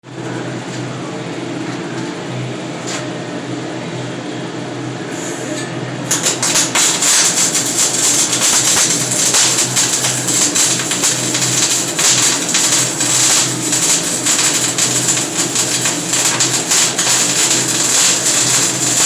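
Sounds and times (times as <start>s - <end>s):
electrical hum: 0.1s - 19.0s
welding arc crackling: 6.1s - 19.0s.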